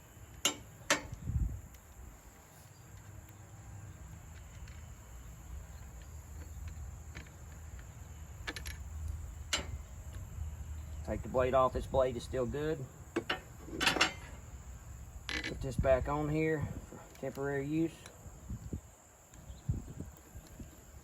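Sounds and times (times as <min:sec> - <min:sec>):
insect drone: 0:00.0 - 0:17.0.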